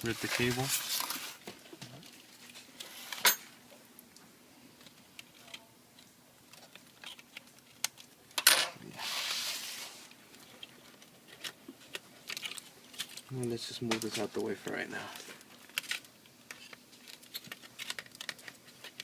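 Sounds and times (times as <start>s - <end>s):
rustling scrape: 0.0s - 1.4s, 8.9s - 10.6s.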